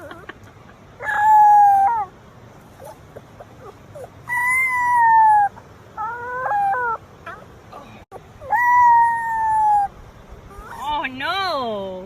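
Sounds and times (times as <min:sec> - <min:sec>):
dog howling: 0:01.0 - 0:02.1, 0:03.6 - 0:07.5, 0:08.4 - 0:09.9
dog yelping: 0:01.0 - 0:02.1, 0:02.8 - 0:07.5, 0:08.1 - 0:11.0.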